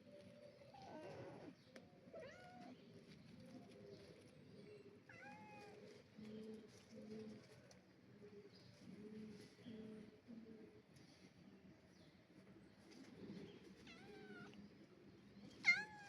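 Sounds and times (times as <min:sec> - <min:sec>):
kittens meowing faintly: 0:00.7 - 0:02.8, 0:05.1 - 0:05.8, 0:13.8 - 0:14.6, 0:15.6 - 0:16.0.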